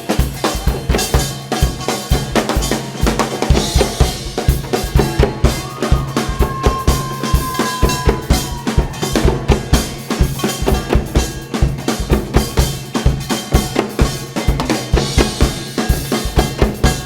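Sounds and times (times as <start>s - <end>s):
fast steady drumming: 0.0s - 17.0s.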